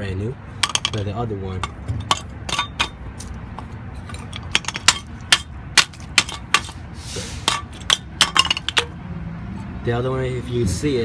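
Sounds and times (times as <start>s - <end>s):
metallic clinks of brake parts: 0.6s - 6.8s, 7.5s - 9.0s.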